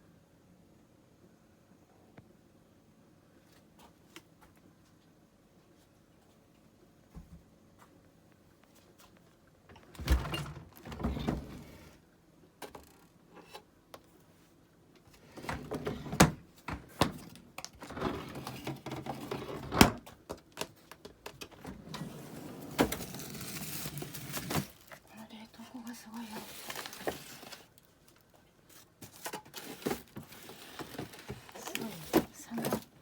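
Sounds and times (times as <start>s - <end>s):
refrigerator doors and drawers handled: 9.7s - 12.0s, 15.2s - 24.9s, 29.0s - 33.0s.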